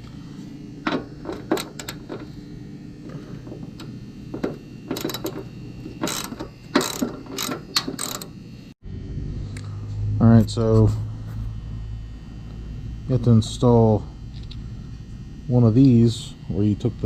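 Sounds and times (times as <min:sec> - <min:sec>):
socket ratchet clicking and rasping: 0:00.8 - 0:02.3, 0:03.1 - 0:08.4.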